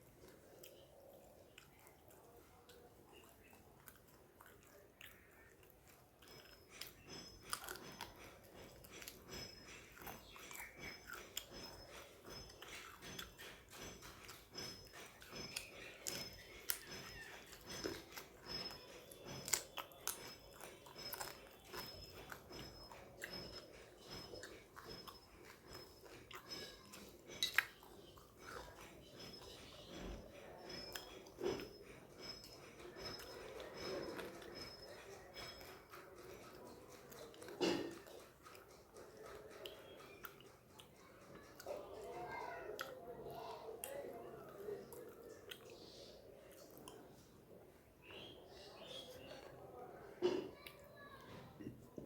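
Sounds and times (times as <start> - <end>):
person chewing: 0.0 - 49.6.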